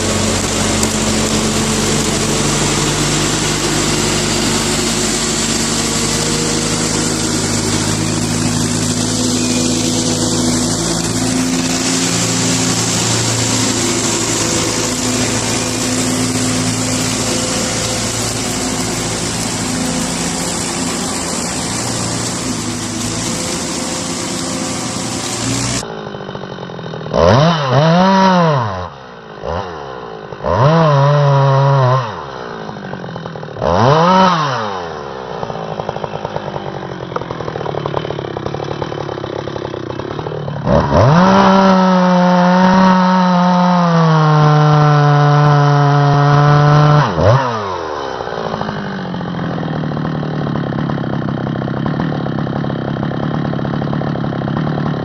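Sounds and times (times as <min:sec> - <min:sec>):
steady engine hum: 0:00.0 - 0:25.9
chainsaw revving: 0:00.0 - 0:55.0.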